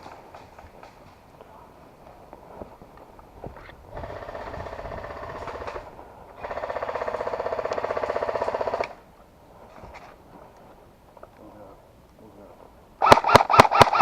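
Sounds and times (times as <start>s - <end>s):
airsoft gun firing full auto: 4.0s - 9.0s, 13.0s - 14.0s.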